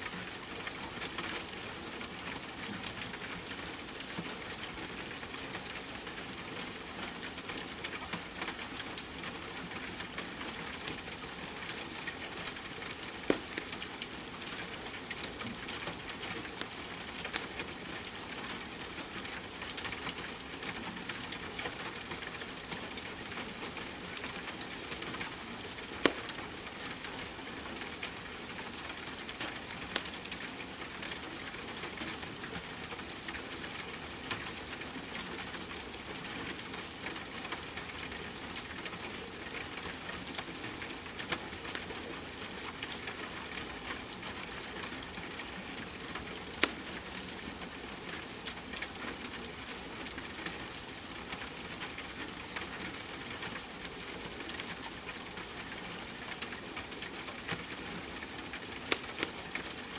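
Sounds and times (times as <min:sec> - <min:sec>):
falling rain hiss: 0:00.0 - 0:59.9
wood fire crackling and popping: 0:12.5 - 0:13.8, 0:25.3 - 0:27.0, 0:46.5 - 0:47.1, 0:58.4 - 0:59.4.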